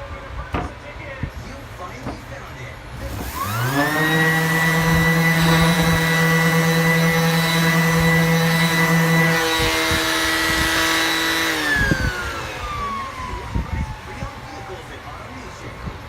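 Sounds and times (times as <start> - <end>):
orbital sander motor whining: 3.0 - 15.2.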